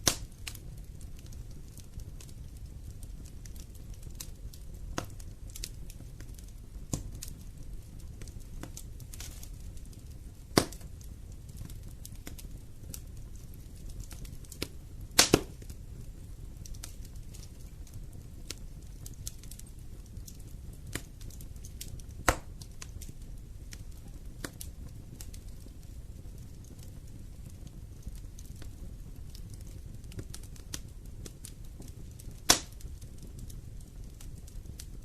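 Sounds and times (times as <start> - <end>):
loud fire pops: 0.0 - 35.0
wood fire crackling: 0.0 - 35.0.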